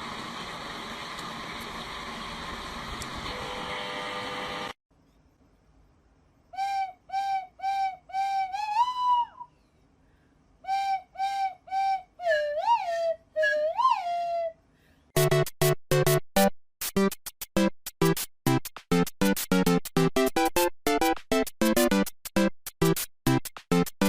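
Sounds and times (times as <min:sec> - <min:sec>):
short whistle-like notes: 0:06.5 - 0:09.8, 0:10.6 - 0:14.7.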